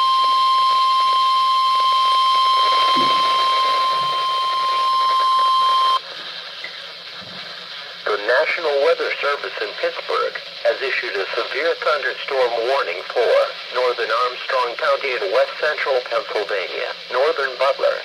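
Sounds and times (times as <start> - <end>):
steady loud alarm tone: 0.0 - 6.0
low radio hiss: 0.0 - 18.0.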